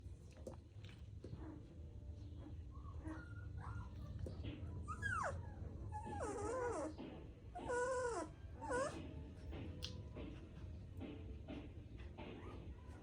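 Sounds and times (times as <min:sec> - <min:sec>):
dog whining: 0:02.8 - 0:09.3.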